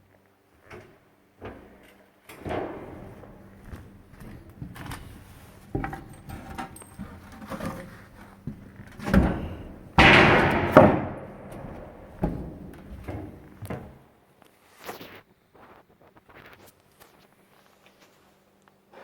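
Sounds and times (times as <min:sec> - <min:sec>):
knocks and clunks: 0:02.4 - 0:14.0.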